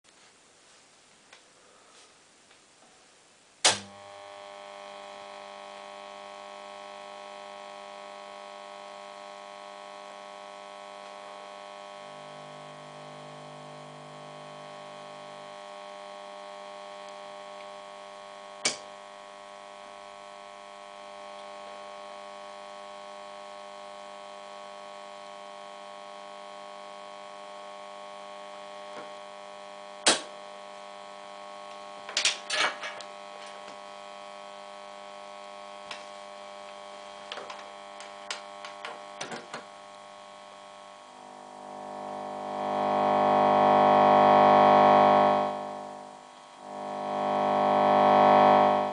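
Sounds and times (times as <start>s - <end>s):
amplifier hiss and mains hum: 0.1s - 48.9s
electric guitar through amp: 3.7s - 48.9s
sharp clicks and crackles: 31.7s - 33.9s, 35.8s - 39.9s.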